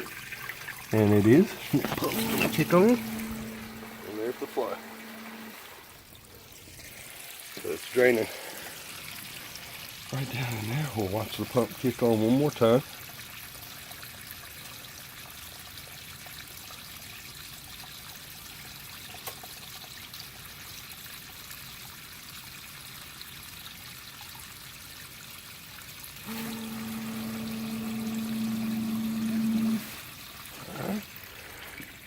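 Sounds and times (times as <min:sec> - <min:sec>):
sump pump humming: 0:00.0 - 0:06.2, 0:26.2 - 0:31.2
water trickling into bucket: 0:00.0 - 0:32.0.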